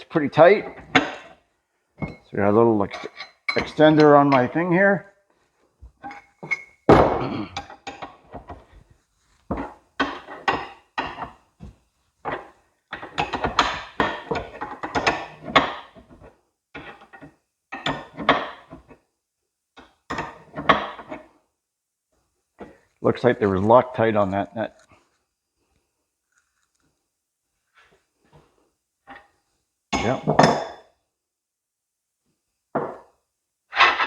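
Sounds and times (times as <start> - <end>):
steel tools clanking: 2.0 - 4.6.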